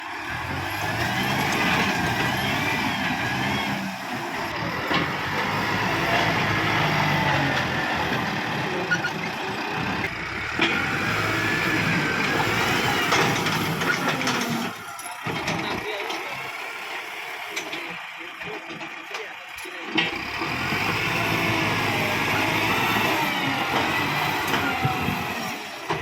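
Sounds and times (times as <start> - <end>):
tractor diesel engine running: 0.0 - 26.0.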